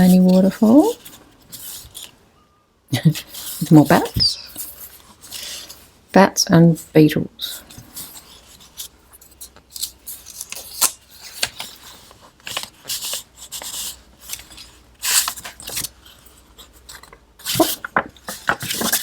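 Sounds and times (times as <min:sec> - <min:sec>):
paper pages rustling: 0:00.0 - 0:02.2, 0:07.7 - 0:19.0.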